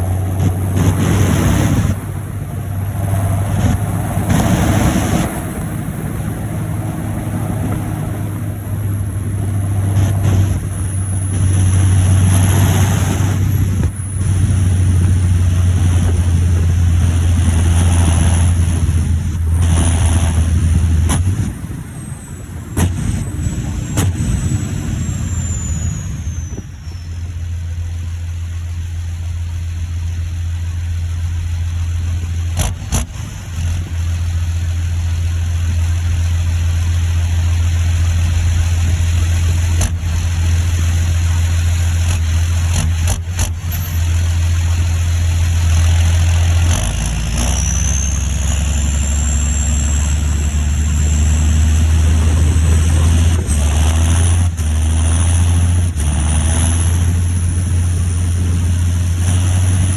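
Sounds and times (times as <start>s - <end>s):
tractor diesel engine running: 0.0s - 59.9s
turbo whistle rising in pitch: 21.8s - 27.8s.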